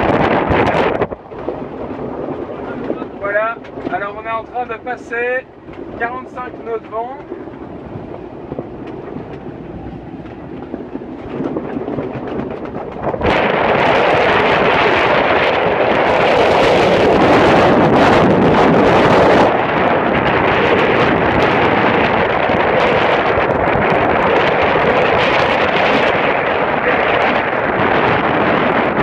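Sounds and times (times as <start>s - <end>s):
strong wind on microphone: 0.0s - 29.0s.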